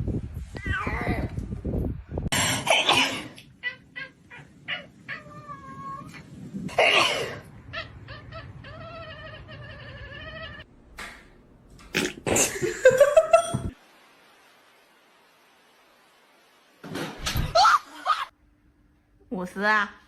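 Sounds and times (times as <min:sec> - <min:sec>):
cat meowing and yowling: 0:00.6 - 0:01.4, 0:03.6 - 0:06.3, 0:07.7 - 0:10.7.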